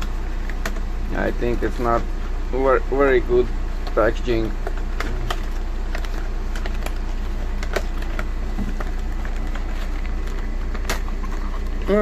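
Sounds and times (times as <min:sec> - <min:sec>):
steady low hum: 0:00.0 - 0:12.0
packaging clicking and crinkling: 0:03.8 - 0:12.0.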